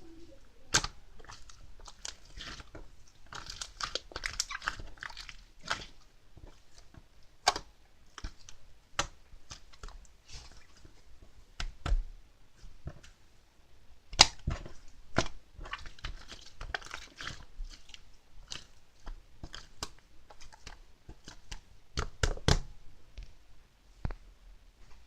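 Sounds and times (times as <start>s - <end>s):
soft crackle of slime: 0.0s - 13.3s, 14.1s - 24.3s
slime wet clicks and pops: 14.1s - 14.4s.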